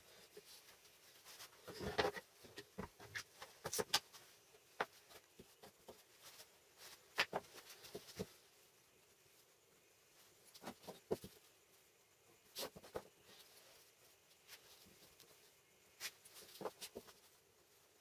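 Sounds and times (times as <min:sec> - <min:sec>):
rustling scrape: 0:00.1 - 0:04.4.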